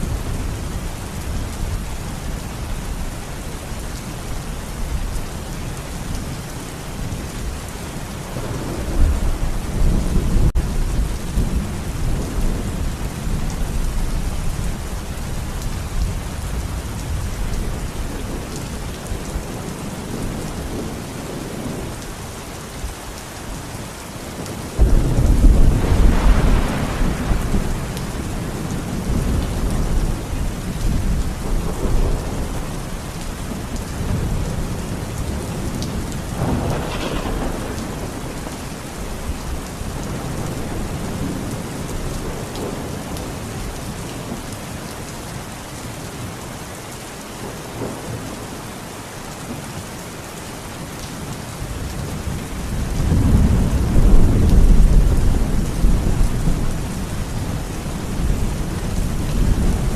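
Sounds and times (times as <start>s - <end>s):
steady rain falling: 0.0s - 59.9s
thunder rumbling: 8.2s - 22.1s, 24.4s - 43.6s, 51.9s - 59.9s.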